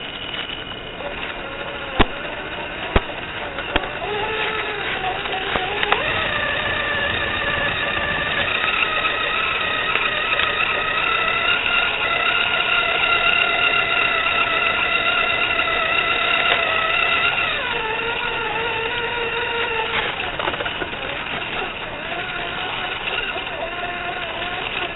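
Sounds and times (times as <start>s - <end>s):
sharp clicks: 0.0s - 18.2s
electric motor and gears whining: 0.0s - 24.9s.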